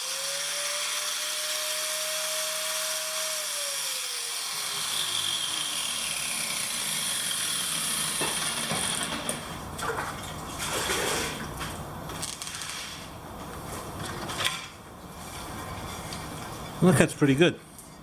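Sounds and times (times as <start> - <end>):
angle grinder cutting tile: 0.0 - 9.4.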